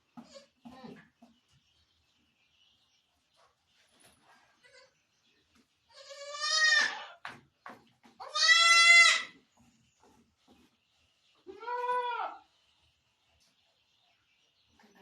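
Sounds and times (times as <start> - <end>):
goat bleating: 5.9 - 7.2, 8.2 - 9.4, 11.5 - 12.4.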